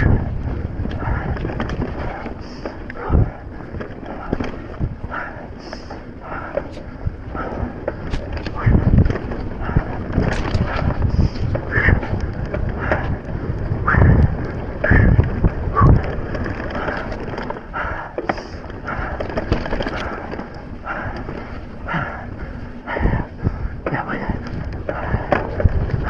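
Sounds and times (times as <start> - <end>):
bike knocking and rattling: 0.0 - 26.0
wind buffeting microphone: 0.0 - 26.0.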